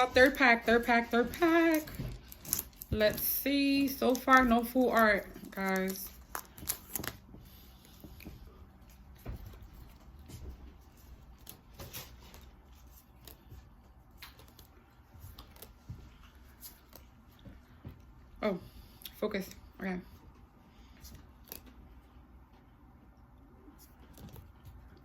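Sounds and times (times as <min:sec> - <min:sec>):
foil wrapper and cards rustling: 0:00.0 - 0:07.3.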